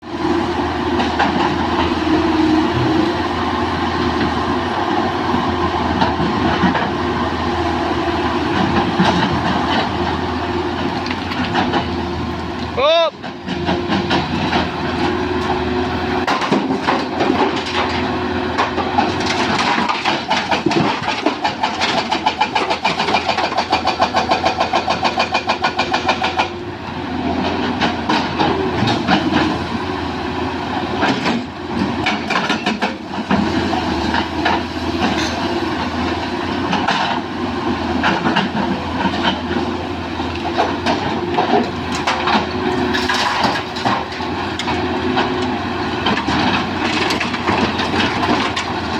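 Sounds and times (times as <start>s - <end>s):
excavator diesel engine running: 0.0s - 48.9s
knocks and clanks: 8.5s - 9.9s, 13.2s - 15.6s, 16.2s - 26.6s, 31.0s - 35.9s, 40.5s - 45.4s.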